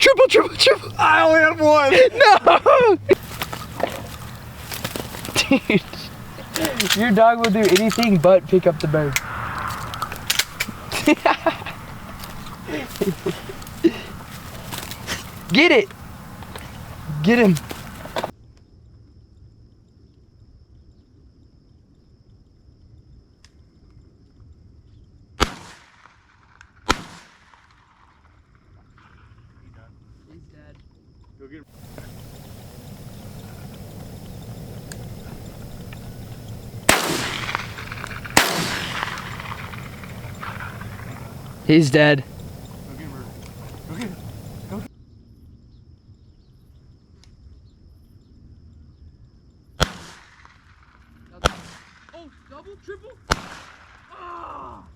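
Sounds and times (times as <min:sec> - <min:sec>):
rolling echo: 0:00.0 - 0:18.3, 0:31.8 - 0:44.9
shotgun shots: 0:03.2 - 0:18.3, 0:31.8 - 0:44.9
shotgun shot: 0:25.4 - 0:26.1, 0:31.8 - 0:44.9, 0:49.8 - 0:50.4, 0:53.3 - 0:53.8.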